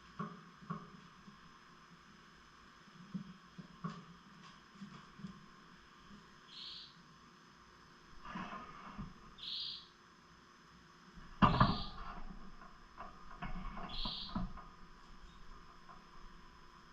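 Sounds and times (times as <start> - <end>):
lovebirds chirping: 6.5 - 7.0, 9.4 - 10.0, 13.8 - 14.4.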